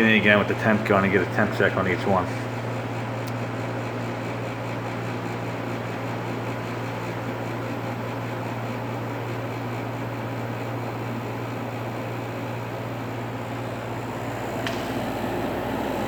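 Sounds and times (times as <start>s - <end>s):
air conditioner compressor hum: 0.0s - 16.0s
fan airflow: 0.0s - 16.0s.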